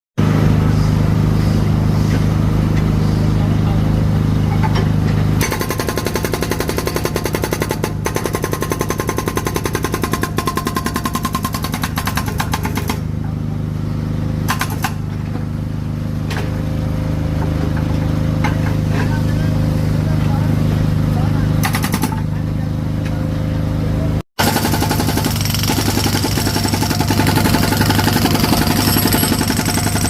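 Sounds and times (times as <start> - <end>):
mechanical hammering: 21.6 - 22.3.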